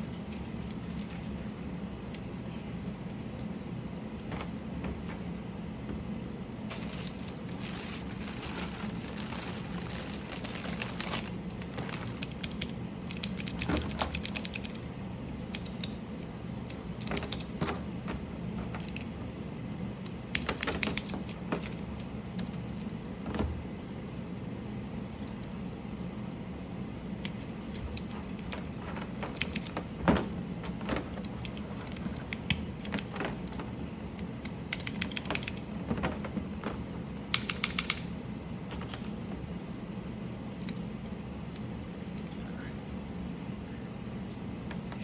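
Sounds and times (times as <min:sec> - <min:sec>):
steady low hum: 0:00.0 - 0:45.0
mechanical keyboard keys clicking: 0:11.5 - 0:14.8, 0:16.7 - 0:17.6, 0:20.0 - 0:23.0, 0:29.2 - 0:29.8, 0:34.4 - 0:35.7, 0:37.3 - 0:38.1.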